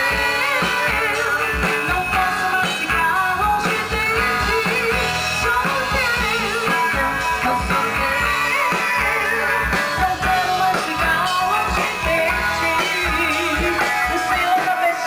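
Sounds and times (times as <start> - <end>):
guitar melody: 0.0 - 14.5
live rock band playing: 0.0 - 15.0.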